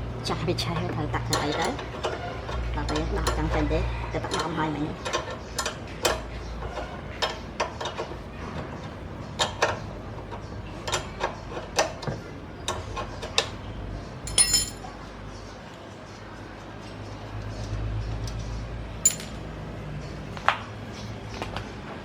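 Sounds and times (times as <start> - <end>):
hand tools clicking on metal: 0.8 - 8.2, 14.3 - 14.9
ringing metal clink: 14.3 - 14.9, 19.0 - 19.4.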